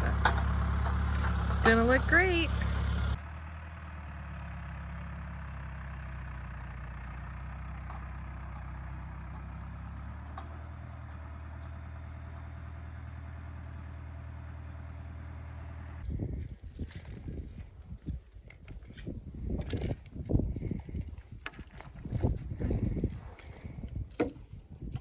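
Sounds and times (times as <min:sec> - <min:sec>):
engine idling: 0:00.0 - 0:16.5.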